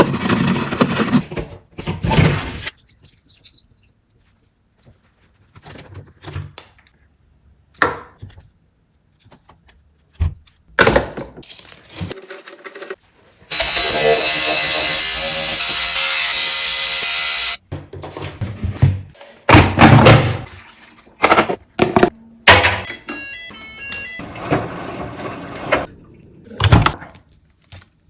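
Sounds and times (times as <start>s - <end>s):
electronic beeps melody: 22.8s - 24.2s
washing machine rushing: 23.6s - 26.9s.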